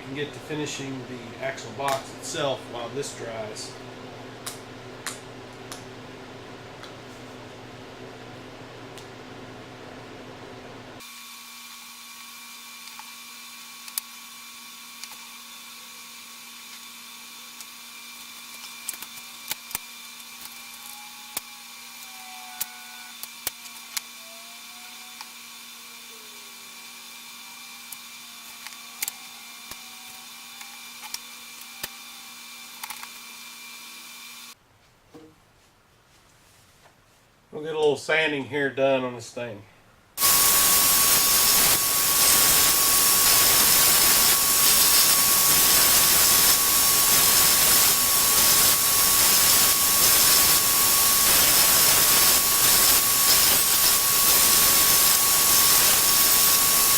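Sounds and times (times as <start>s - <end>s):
small electric motor whining: 11.0s - 34.6s, 40.2s - 56.9s.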